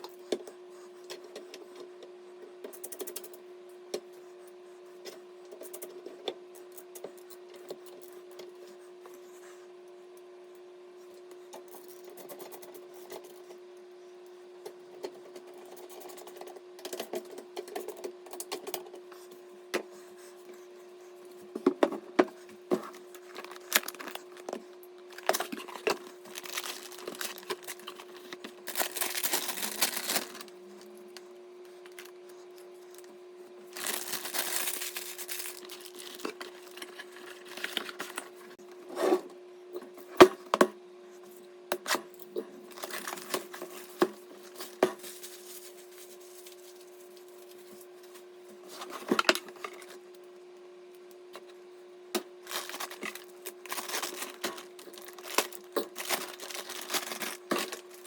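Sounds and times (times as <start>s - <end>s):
steady hum: 0.0s - 58.0s
crinkly rustling: 22.8s - 31.0s, 33.7s - 38.6s, 42.7s - 49.9s, 52.4s - 58.0s.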